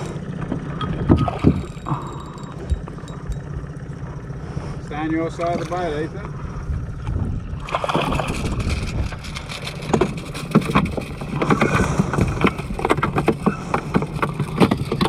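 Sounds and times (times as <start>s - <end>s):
water noise: 0.0s - 4.6s, 5.4s - 15.0s
knocks and splashes: 0.4s - 1.9s, 7.6s - 15.0s
wind on microphone: 6.6s - 9.4s.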